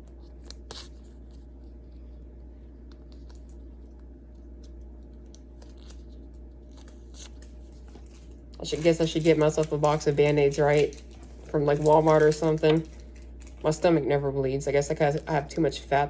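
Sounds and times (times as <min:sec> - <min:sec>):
steady low hum: 0:00.0 - 0:16.0
small items clicking and rustling: 0:05.3 - 0:13.9.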